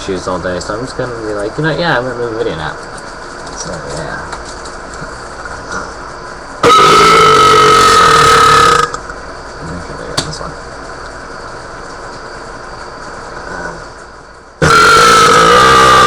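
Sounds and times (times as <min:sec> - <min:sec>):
person burping: 0:06.6 - 0:09.0, 0:14.6 - 0:16.0.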